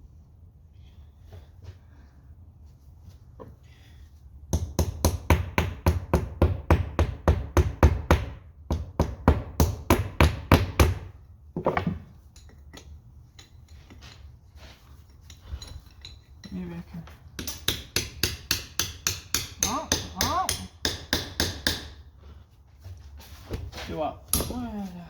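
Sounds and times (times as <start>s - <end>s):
rapid hammering: 4.5s - 11.1s, 17.4s - 22.0s.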